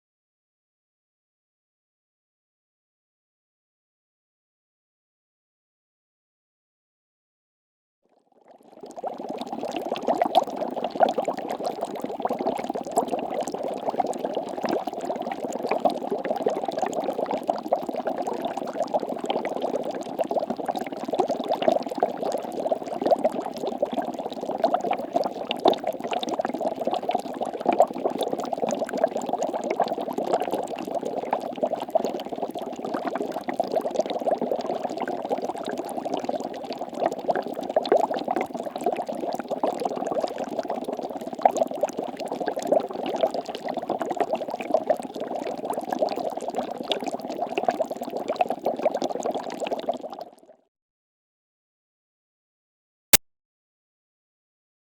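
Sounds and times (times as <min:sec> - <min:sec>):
water bubbling: 0:08.8 - 0:50.2.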